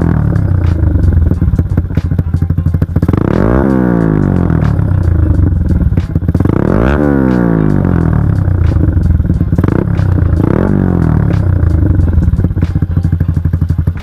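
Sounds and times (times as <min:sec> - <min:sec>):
motorcycle engine revving: 0:00.0 - 0:14.0.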